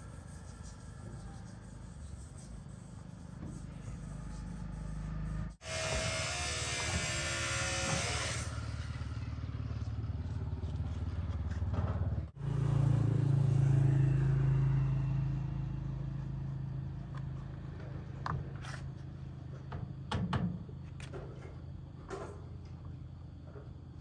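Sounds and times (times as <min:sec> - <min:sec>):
motor humming: 0:04.4 - 0:08.9.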